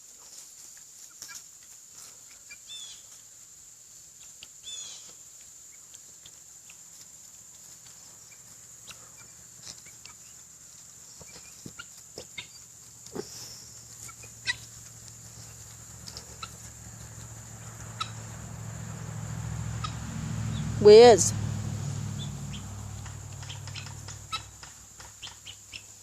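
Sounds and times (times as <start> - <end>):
fowl clucking and calling: 11.2 - 12.6, 13.2 - 18.5, 19.8 - 20.0, 22.5 - 26.0.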